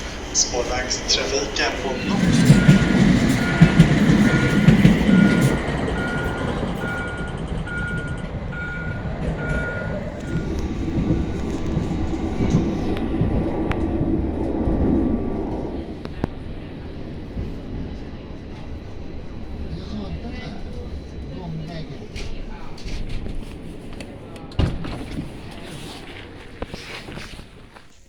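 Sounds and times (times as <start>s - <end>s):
train door warning beeps: 0.0s - 13.4s
train carriage rumble: 0.0s - 28.0s.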